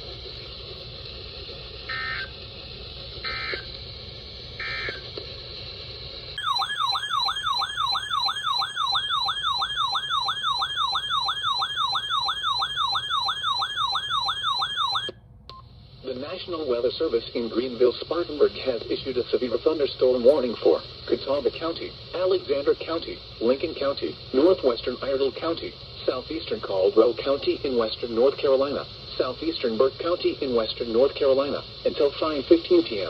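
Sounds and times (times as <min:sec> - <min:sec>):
digital data tones: 0:06.4 - 0:15.1
warbling alert tone: 0:06.4 - 0:15.1.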